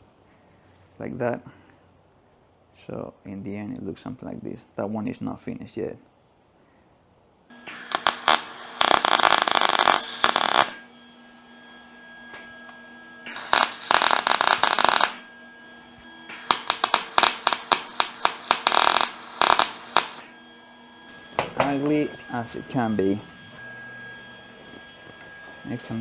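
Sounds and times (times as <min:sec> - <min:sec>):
arc welding crackling: 0:07.5 - 0:10.9, 0:13.3 - 0:15.3, 0:16.3 - 0:20.3
welding machine hum: 0:07.5 - 0:10.9, 0:12.7 - 0:20.4.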